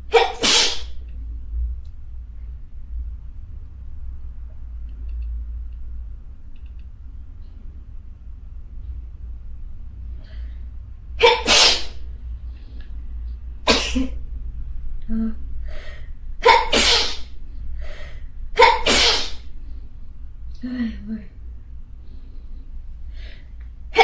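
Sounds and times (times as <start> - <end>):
person sneezing: 0.0 - 0.9, 11.2 - 12.0, 13.7 - 14.1, 16.4 - 17.3, 18.6 - 19.4
person breathing and gasping: 15.1 - 16.1, 17.8 - 18.3.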